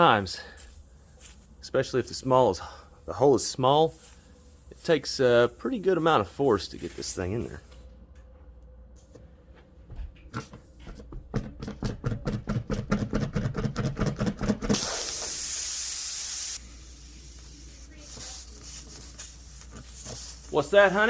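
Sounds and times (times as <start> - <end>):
air hissing from tyre: 0.4 - 1.6, 2.5 - 6.0, 14.7 - 21.0.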